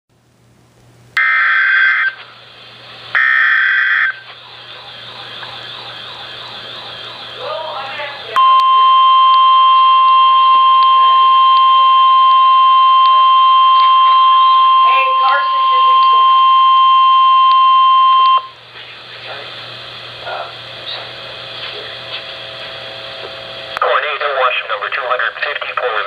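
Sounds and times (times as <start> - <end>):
screechy digital data bursts: 3.2 - 4.2.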